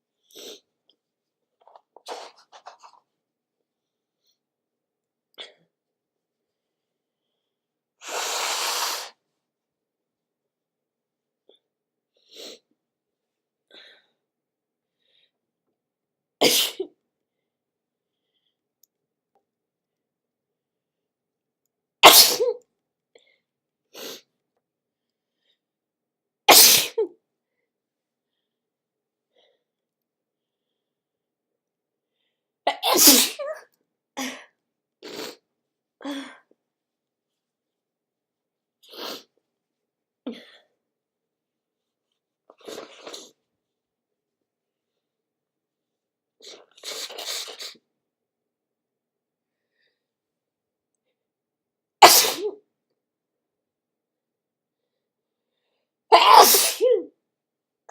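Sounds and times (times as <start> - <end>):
person sneezing: 22.0 - 22.6, 26.5 - 27.1, 32.7 - 33.6, 52.0 - 52.6, 56.1 - 57.1.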